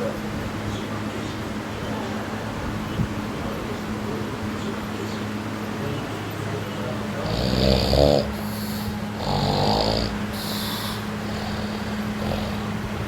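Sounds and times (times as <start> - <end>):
steady low hum: 0.0 - 13.0
loud rattling snores: 7.2 - 13.0
hiss of breath: 8.4 - 9.1, 10.3 - 12.1.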